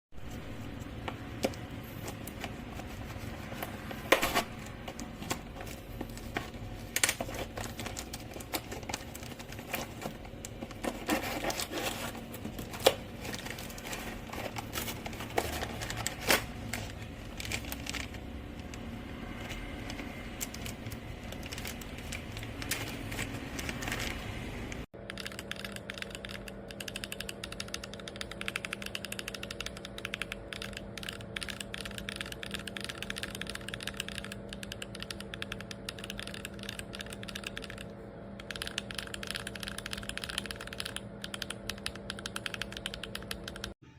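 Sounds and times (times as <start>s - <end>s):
fast typing on a keyboard: 19.8s - 24.1s, 25.0s - 43.8s
mechanical keyboard switches clicking: 25.0s - 43.8s.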